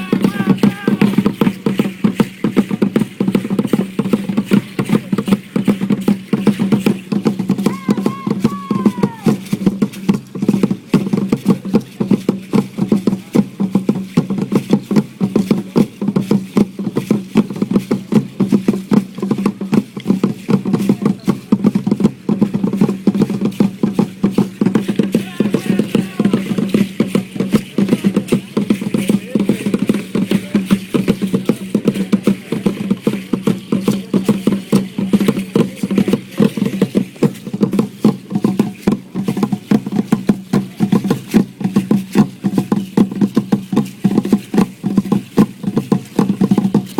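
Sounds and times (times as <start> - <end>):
fast steady drumming: 0.0 - 46.9
low booming drum tone: 0.0 - 46.9.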